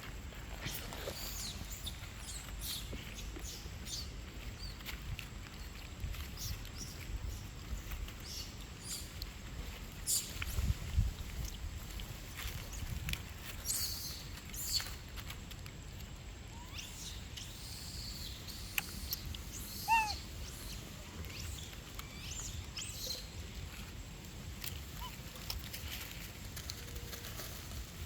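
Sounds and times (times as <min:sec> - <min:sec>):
high animal calls and chirps: 0:16.5 - 0:23.4, 0:24.8 - 0:26.0.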